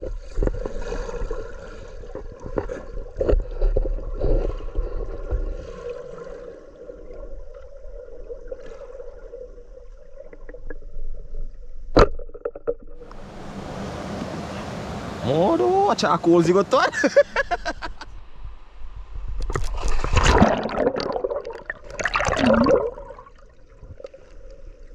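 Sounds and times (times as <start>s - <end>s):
bright rushing water: 13.0s - 16.8s.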